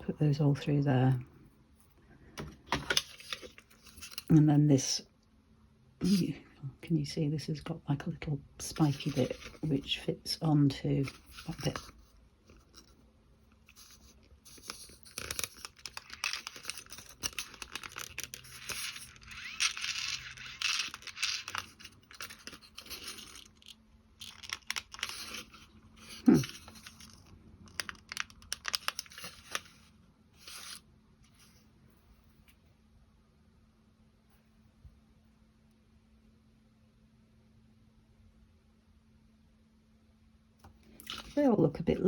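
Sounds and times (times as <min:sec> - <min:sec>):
clock parts scraping and rustling: 0:13.7 - 0:27.9.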